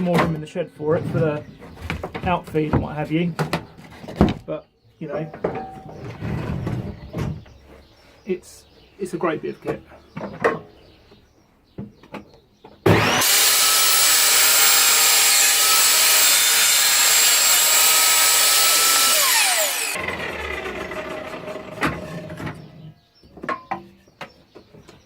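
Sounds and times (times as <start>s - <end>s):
table saw whining: 12.8s - 22.4s.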